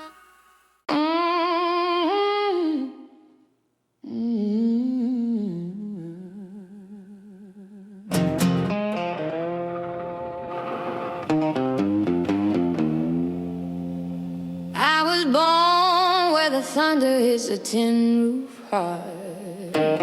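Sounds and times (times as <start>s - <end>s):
woman humming: 4.0s - 8.2s
electric guitar strum: 8.1s - 14.8s, 19.8s - 20.0s.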